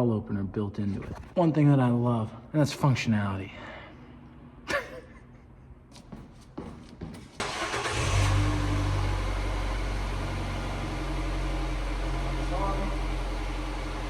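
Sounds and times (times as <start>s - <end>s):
car engine starting and idling: 7.4s - 14.0s.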